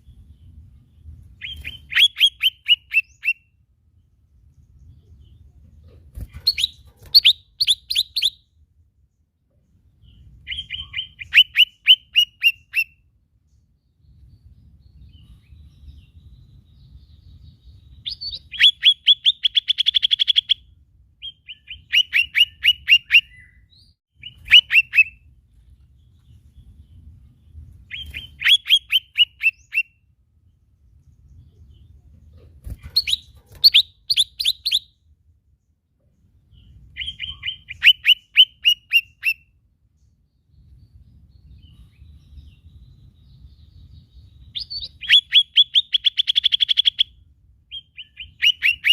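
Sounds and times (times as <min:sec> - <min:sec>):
bird singing whistled notes: 0:00.0 - 0:03.6, 0:06.4 - 0:08.6, 0:10.0 - 0:13.0, 0:13.8 - 0:25.2, 0:27.8 - 0:30.1, 0:33.0 - 0:35.1, 0:36.5 - 0:39.6, 0:40.2 - 0:48.9.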